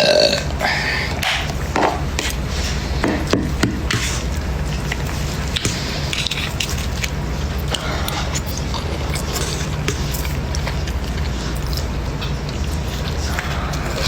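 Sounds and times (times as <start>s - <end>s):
steady low hum: 0.0s - 14.0s
close-miked chewing: 4.0s - 14.0s.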